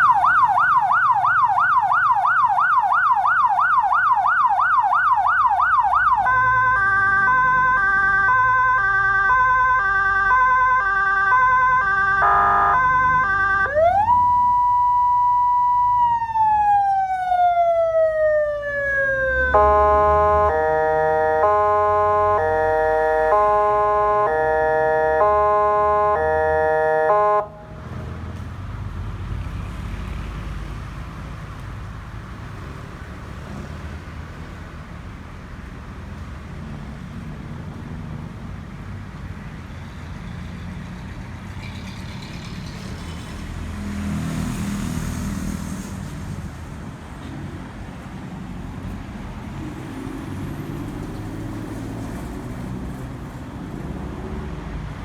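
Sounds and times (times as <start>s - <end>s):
vehicle and road noise: 0.0s - 55.0s
two-pitch electronic warning tone: 6.3s - 15.9s.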